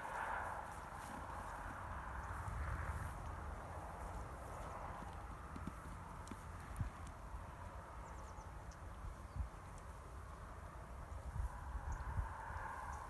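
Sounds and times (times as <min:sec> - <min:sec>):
cattle hooves on snow: 0:00.0 - 0:08.2.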